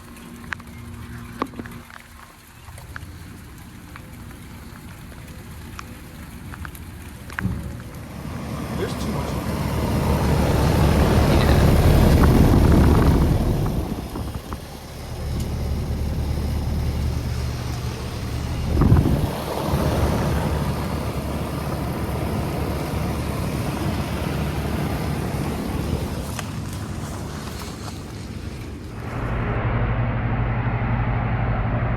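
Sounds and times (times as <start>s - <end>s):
fan noise: 0.0s - 31.9s
compressor hum: 5.2s - 31.9s
rushing swell: 29.0s - 31.9s.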